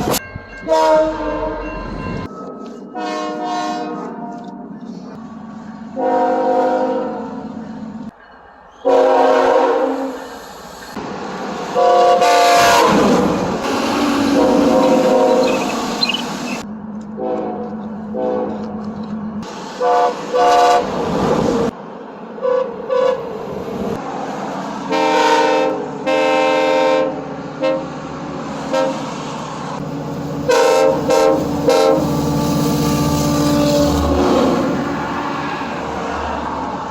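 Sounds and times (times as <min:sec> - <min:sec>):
train air horn blasts: 0:00.6 - 0:01.7, 0:02.9 - 0:04.5, 0:05.9 - 0:07.5, 0:08.9 - 0:10.2, 0:11.7 - 0:16.6, 0:17.2 - 0:18.7, 0:19.8 - 0:20.9, 0:22.4 - 0:23.2, 0:24.9 - 0:28.0, 0:28.6 - 0:29.1, 0:30.4 - 0:35.3.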